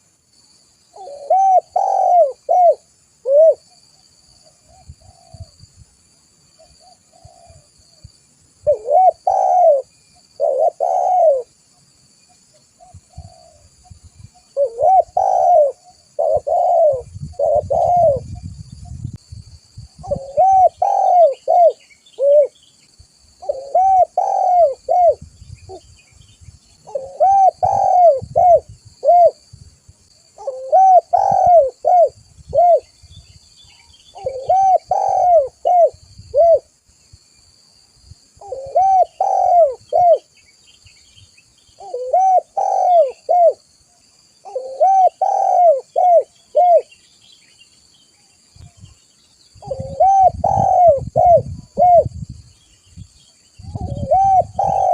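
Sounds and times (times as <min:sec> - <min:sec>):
dove cooing: 0:01.0 - 0:03.8, 0:04.7 - 0:05.6, 0:06.6 - 0:07.7, 0:08.6 - 0:11.6, 0:12.8 - 0:13.7, 0:14.5 - 0:18.4, 0:20.0 - 0:22.6, 0:23.4 - 0:25.8, 0:26.8 - 0:29.4, 0:30.4 - 0:32.9, 0:34.1 - 0:36.7, 0:38.4 - 0:40.3, 0:41.8 - 0:43.6, 0:44.4 - 0:46.9, 0:49.6 - 0:52.2, 0:53.6 - 0:54.9.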